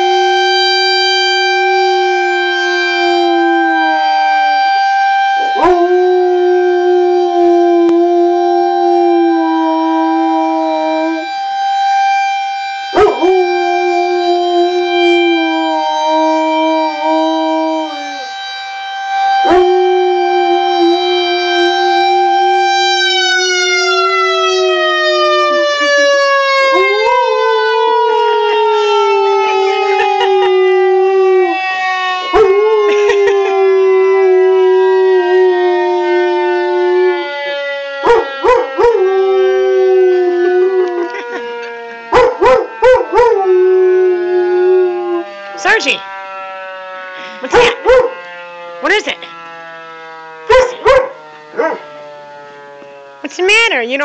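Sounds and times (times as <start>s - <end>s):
tornado warning siren: 0.0s - 54.0s
dog howling: 5.4s - 11.2s, 13.0s - 18.3s, 19.4s - 35.7s, 38.0s - 41.4s, 42.1s - 45.2s, 50.5s - 51.9s.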